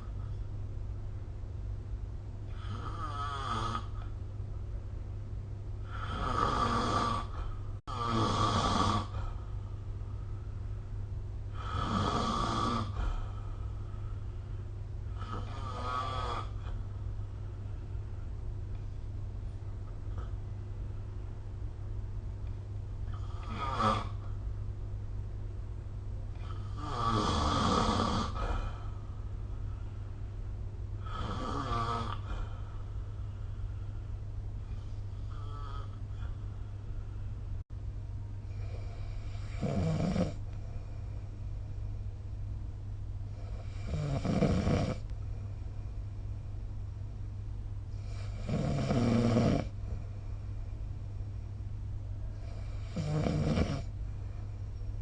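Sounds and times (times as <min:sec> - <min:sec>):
steady low hum: 0:00.0 - 0:55.0
person snoring: 0:02.5 - 0:04.0, 0:05.8 - 0:09.3, 0:11.5 - 0:13.2, 0:15.2 - 0:16.8, 0:23.1 - 0:24.2, 0:26.4 - 0:28.8, 0:31.0 - 0:32.6, 0:43.4 - 0:45.0, 0:48.0 - 0:49.8, 0:52.3 - 0:53.9.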